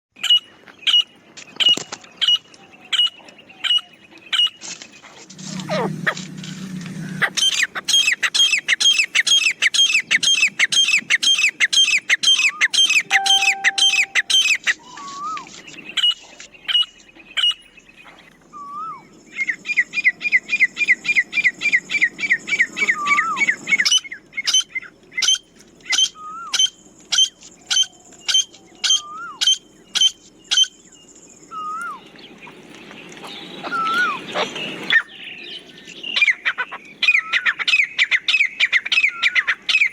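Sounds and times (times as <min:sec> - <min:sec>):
francolin calling: 0:12.4 - 0:14.6.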